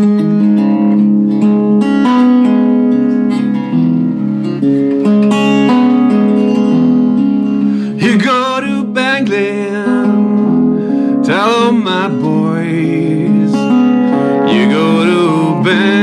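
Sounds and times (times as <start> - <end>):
acoustic guitar playing: 0.0 - 16.0
man singing: 7.8 - 16.0.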